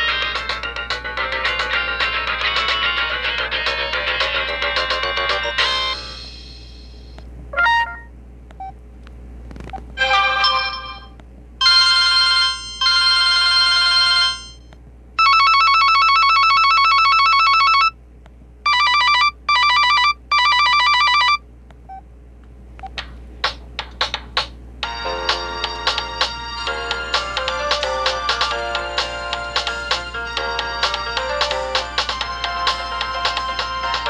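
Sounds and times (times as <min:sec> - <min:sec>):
phone electronic alert tones: 0:07.6 - 0:08.1.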